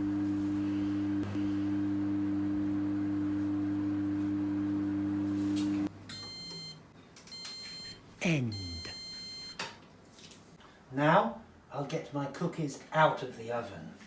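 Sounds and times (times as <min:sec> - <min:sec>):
oven electric hum: 0:00.0 - 0:06.5
high electronic timer beep: 0:07.4 - 0:09.6.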